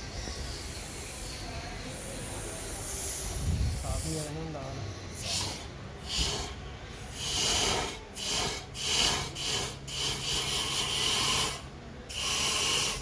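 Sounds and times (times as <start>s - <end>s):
hissing spray bursts: 5.2s - 13.0s.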